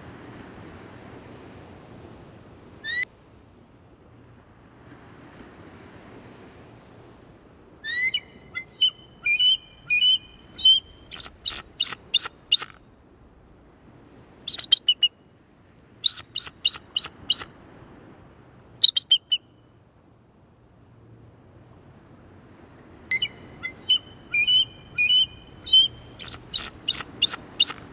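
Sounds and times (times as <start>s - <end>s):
eagle calling: 7.8s - 12.8s, 14.5s - 15.1s, 16.0s - 17.5s, 18.8s - 19.4s, 23.1s - 27.9s.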